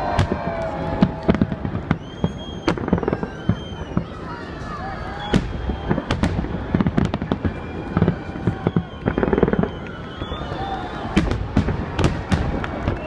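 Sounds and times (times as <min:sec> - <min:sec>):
fireworks bursting: 0:00.0 - 0:13.0.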